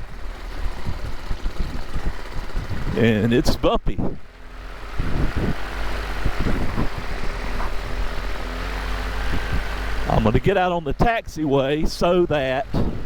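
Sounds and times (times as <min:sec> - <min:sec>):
small aircraft engine hum: 0:00.0 - 0:10.2.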